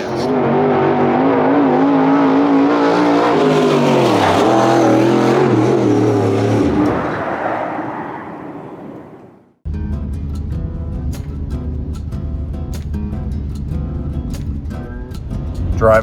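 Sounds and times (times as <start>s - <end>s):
race car engine at high revs: 0.0s - 9.3s.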